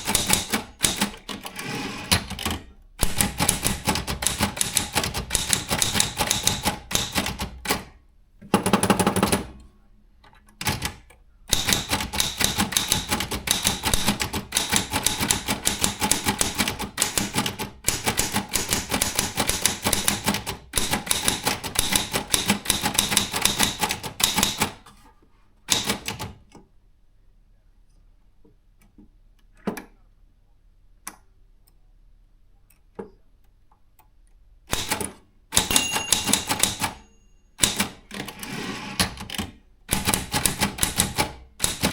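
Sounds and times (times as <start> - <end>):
typewriter keys clacking: 0.0 - 7.9, 10.6 - 24.8, 34.8 - 41.9.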